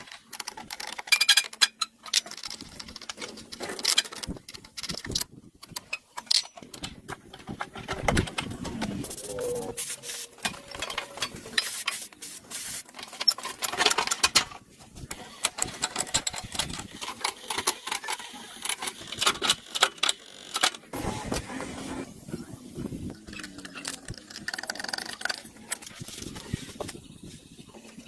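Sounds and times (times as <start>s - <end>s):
hand tools clinking and knocking: 0.1s - 12.1s, 12.9s - 20.8s.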